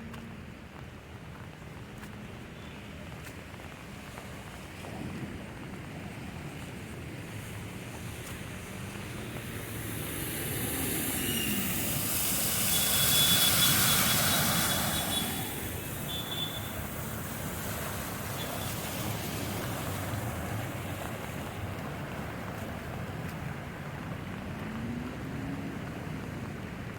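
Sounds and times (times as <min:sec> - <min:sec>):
background rush: 0:03.5 - 0:26.9
tyres hissing through water: 0:07.9 - 0:21.4.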